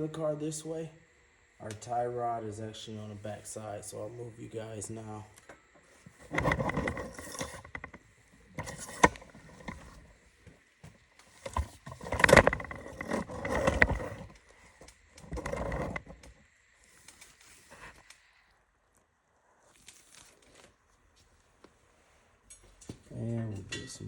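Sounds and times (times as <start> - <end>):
camera handling rustling and scraping: 5.8 - 18.2.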